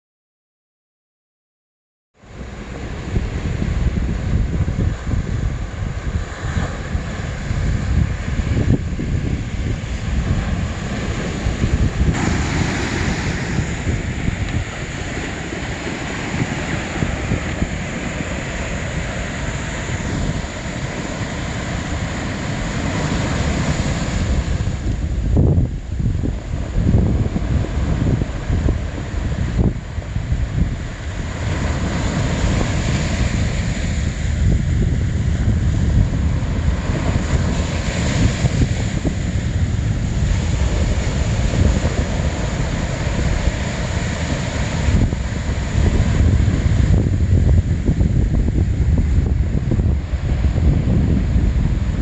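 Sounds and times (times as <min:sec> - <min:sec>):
wind buffeting microphone: 0:02.2 - 0:52.0
sea waves on pebble beach: 0:09.4 - 0:25.3.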